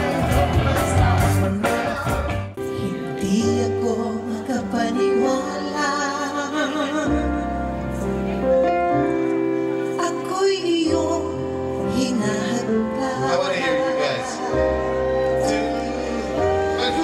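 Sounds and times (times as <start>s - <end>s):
song with person singing: 0.0s - 7.6s.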